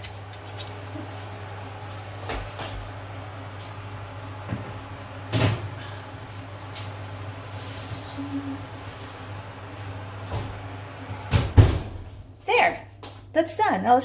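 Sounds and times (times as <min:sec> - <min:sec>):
steady low hum: 0:00.0 - 0:14.0
oven door thudding shut: 0:11.3 - 0:12.0.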